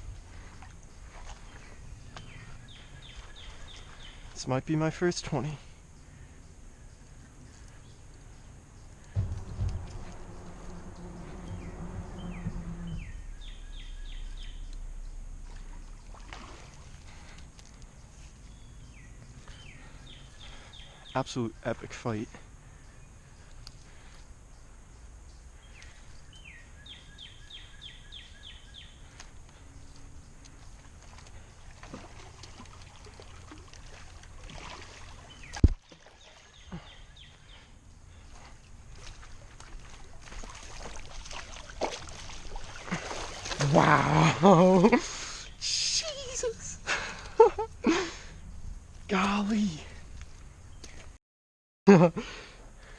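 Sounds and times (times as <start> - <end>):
bird chirping: 0.0 - 4.8, 5.9 - 16.3, 17.0 - 31.6
water sloshing and trickling: 0.0 - 21.1, 28.9 - 45.1, 46.2 - 51.2
low rumble: 8.2 - 20.0
loud thumps: 9.0 - 16.5.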